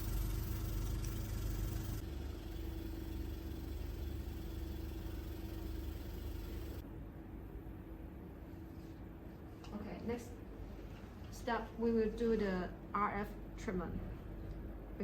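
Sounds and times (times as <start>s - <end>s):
pump motor hum: 0.0s - 6.8s.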